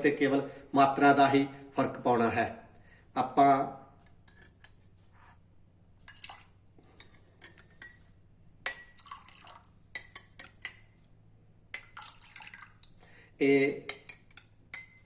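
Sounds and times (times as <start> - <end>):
liquid pouring into a glass: 8.9 - 9.9, 11.8 - 13.0.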